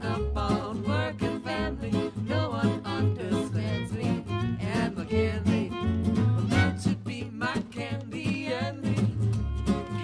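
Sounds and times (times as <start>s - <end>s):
country music with guitar and fiddle: 0.0s - 10.0s.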